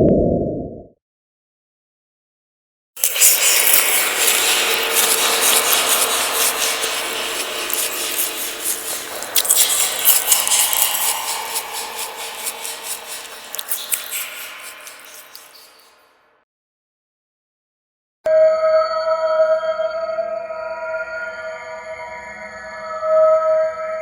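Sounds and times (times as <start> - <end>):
harsh scraping and rasping: 3.0 - 16.0.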